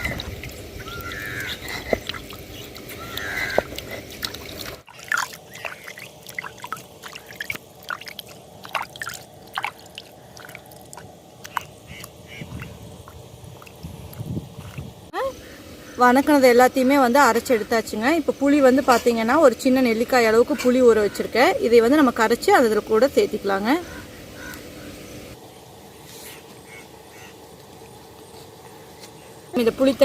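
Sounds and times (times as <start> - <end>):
birds chirping: 0.0 - 8.6, 11.4 - 18.9
water sloshing in grinder: 0.0 - 15.0.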